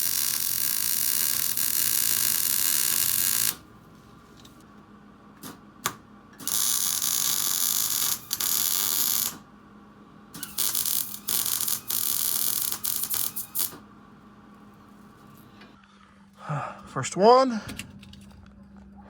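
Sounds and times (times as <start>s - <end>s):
power wrench bursts: 6.4s - 9.4s, 10.4s - 13.8s.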